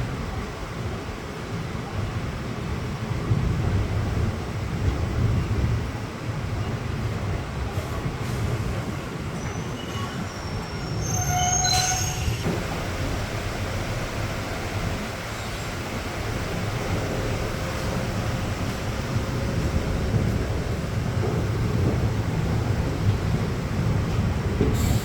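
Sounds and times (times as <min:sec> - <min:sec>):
diesel train rumbling: 0:00.0 - 0:25.0
high-pitched wheel squeal: 0:09.4 - 0:12.5.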